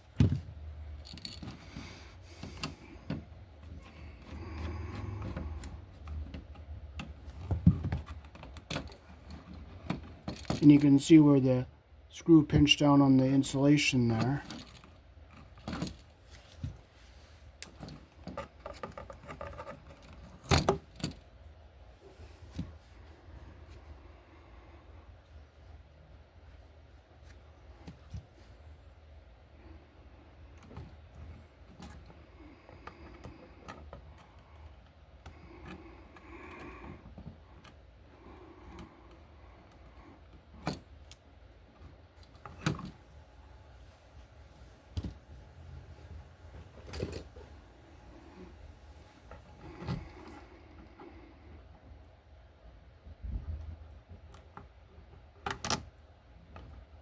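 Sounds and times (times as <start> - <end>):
tools clicking and rattling: 1.0 - 1.6.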